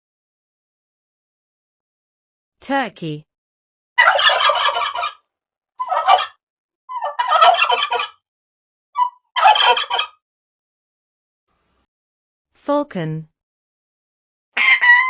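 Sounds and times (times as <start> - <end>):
turkey gobbling: 4.0 - 5.2, 5.8 - 8.2, 9.0 - 10.2, 14.6 - 15.0.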